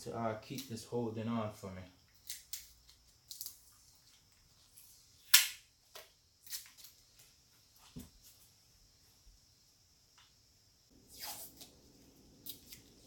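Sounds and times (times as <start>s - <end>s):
tape ripping off roll: 11.0s - 11.8s.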